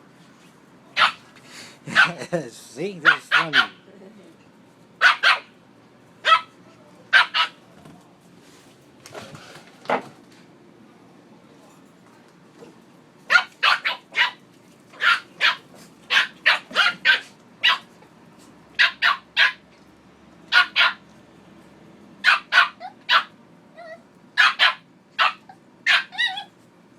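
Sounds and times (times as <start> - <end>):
dog barking: 0.9 - 1.2, 1.9 - 2.2, 3.0 - 3.8, 5.0 - 5.5, 6.2 - 7.6, 13.3 - 14.4, 15.0 - 17.9, 18.8 - 19.6, 20.5 - 21.0, 22.2 - 23.4, 24.4 - 26.4
dog whining: 22.2 - 26.6.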